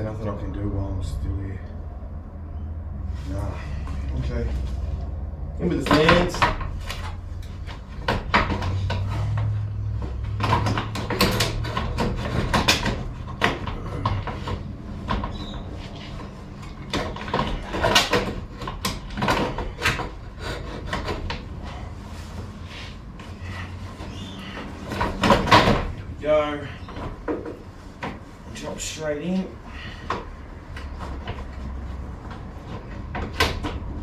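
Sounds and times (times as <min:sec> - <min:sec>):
cooling fan being handled: 0:01.8 - 0:34.0.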